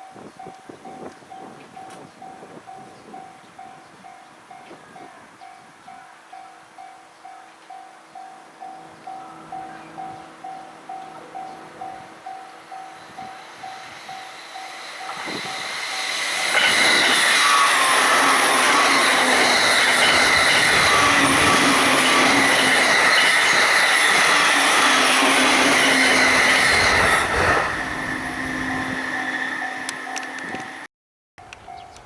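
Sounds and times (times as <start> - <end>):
level-crossing warning bell: 0.0 - 32.0
train wheels rushing on rails: 9.4 - 30.9.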